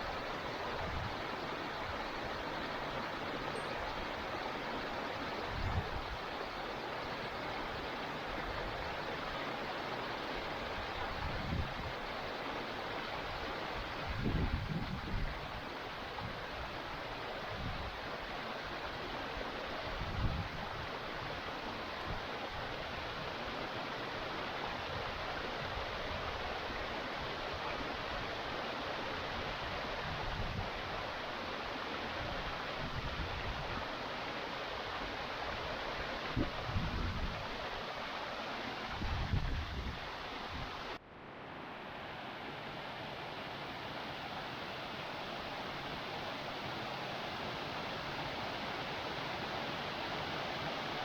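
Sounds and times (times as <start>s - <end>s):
wind rumble on microphone: 5.4s - 6.3s, 10.9s - 12.1s, 13.8s - 16.8s, 19.9s - 21.0s, 36.2s - 37.7s, 38.9s - 40.9s.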